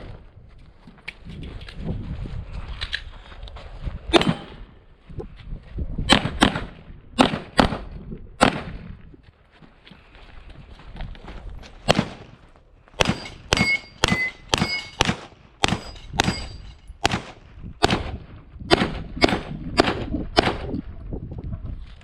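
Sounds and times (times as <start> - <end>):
handgun shots: 4.2 - 4.6, 13.0 - 20.6
steel targets ringing: 13.0 - 17.0.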